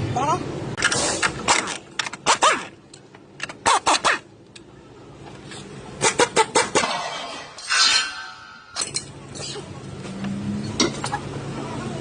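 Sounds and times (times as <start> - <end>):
metal knocks and clanks: 6.8 - 9.2.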